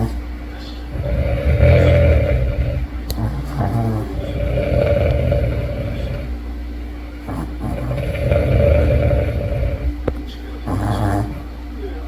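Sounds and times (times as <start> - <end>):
dog snoring loudly: 0.0 - 0.2, 0.8 - 6.4, 7.2 - 11.6.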